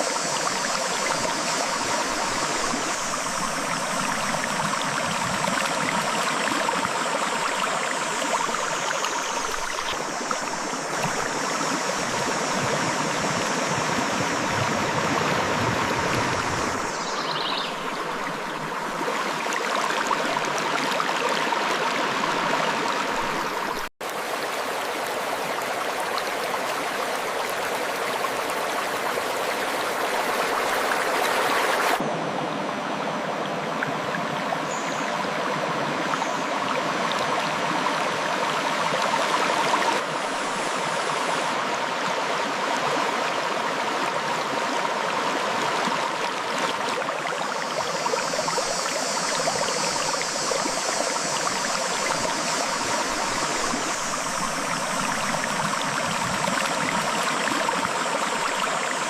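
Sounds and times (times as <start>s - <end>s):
high hiss: 0.0s - 18.9s, 47.2s - 59.0s.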